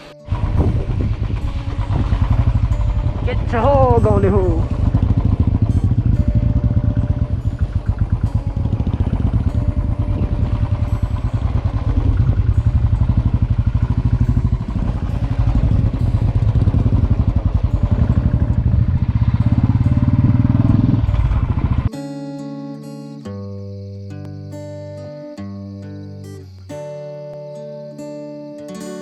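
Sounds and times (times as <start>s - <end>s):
vehicle engine running: 0.0s - 21.9s.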